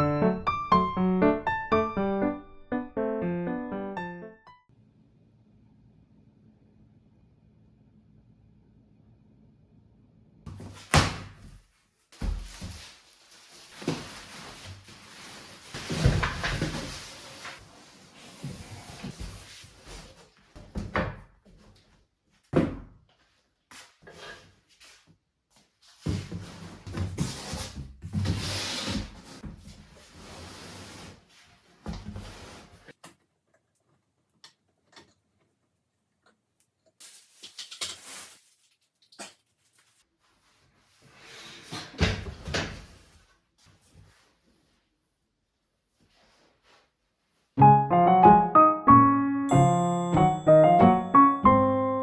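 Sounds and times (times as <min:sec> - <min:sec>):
rustling: 0:12.4 - 0:20.4.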